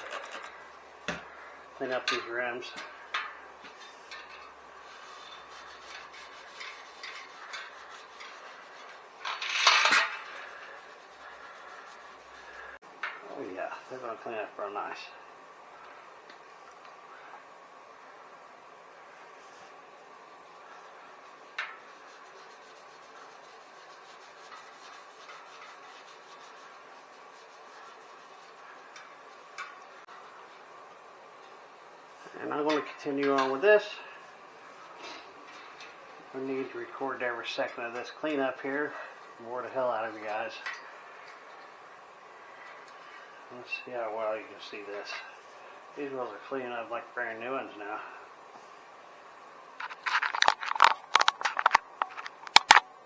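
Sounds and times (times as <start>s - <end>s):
steel wool scrubbing metal rim: 0.0s - 12.8s, 20.6s - 30.8s.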